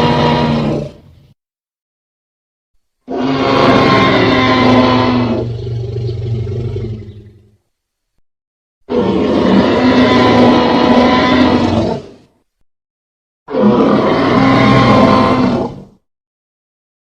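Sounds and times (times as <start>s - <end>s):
dinosaur roaring: 0.0s - 1.1s, 3.1s - 7.6s, 8.9s - 12.3s, 13.5s - 16.0s.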